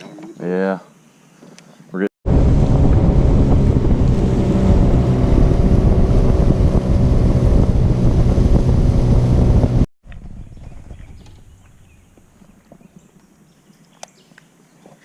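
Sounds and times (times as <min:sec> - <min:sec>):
outboard motor running: 0:02.3 - 0:09.9
wind buffeting microphone: 0:02.3 - 0:12.9.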